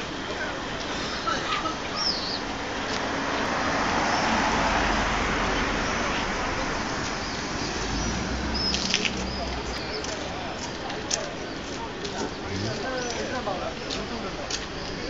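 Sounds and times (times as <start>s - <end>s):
road traffic: 0.0s - 15.0s
wind: 0.0s - 15.0s
bird chirps: 7.2s - 10.2s.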